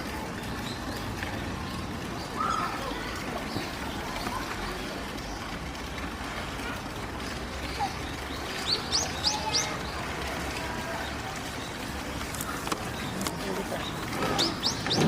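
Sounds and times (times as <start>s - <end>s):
outdoor background noise: 0.0s - 15.0s
small bird chirping: 12.2s - 15.0s.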